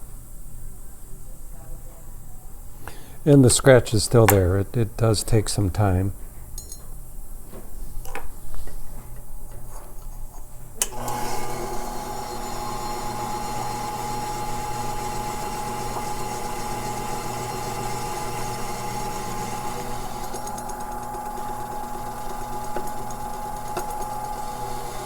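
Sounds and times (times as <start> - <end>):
handling clicks and taps: 4.2 - 4.5
motor and spinning lap humming: 10.8 - 25.0.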